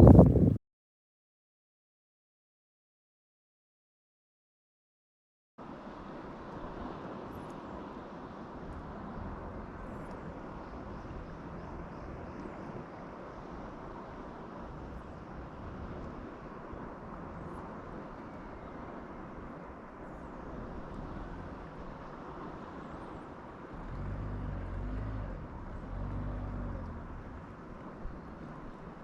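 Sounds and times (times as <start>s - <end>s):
low hum: 0.0s - 0.6s, 23.8s - 27.9s
wind: 0.0s - 0.6s, 5.6s - 29.0s
water: 5.6s - 29.0s.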